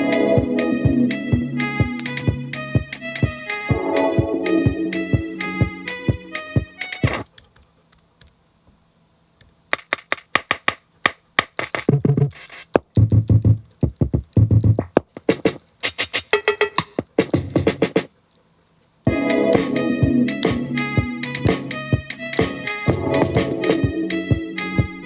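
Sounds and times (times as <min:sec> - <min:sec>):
kick drum thumps: 0:00.3 - 0:07.2, 0:13.0 - 0:15.6, 0:17.0 - 0:18.0, 0:19.1 - 0:25.0
sharp clicks: 0:09.4 - 0:18.4.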